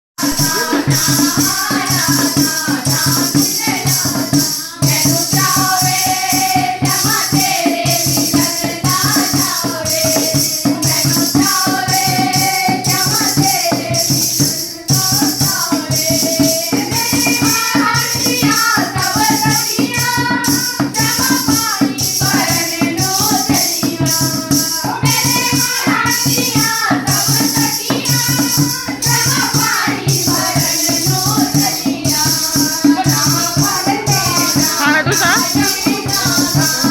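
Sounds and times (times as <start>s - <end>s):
fast percussion beat: 0.2s - 36.9s
person singing wavering melody: 0.3s - 2.3s, 32.5s - 36.9s
jingling rattles: 0.4s - 36.9s.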